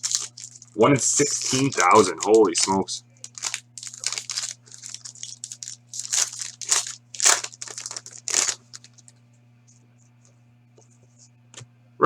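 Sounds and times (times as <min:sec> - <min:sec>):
card wrappers crinkling: 0:00.0 - 0:09.2.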